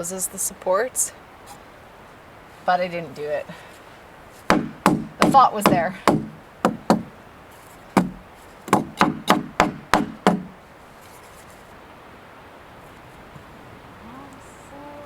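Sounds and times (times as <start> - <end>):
hammer striking wood: 4.5 - 7.2, 8.0 - 10.6.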